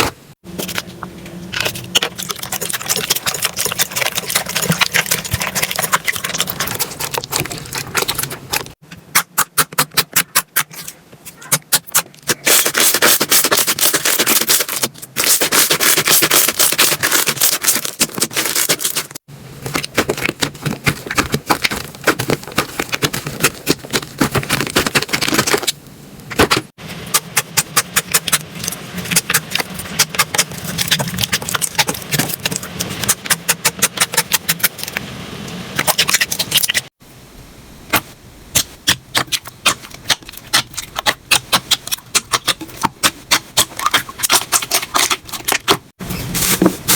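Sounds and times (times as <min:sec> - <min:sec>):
slime crackling and popping: 0:01.5 - 0:09.6, 0:11.7 - 0:26.5, 0:38.6 - 0:45.8.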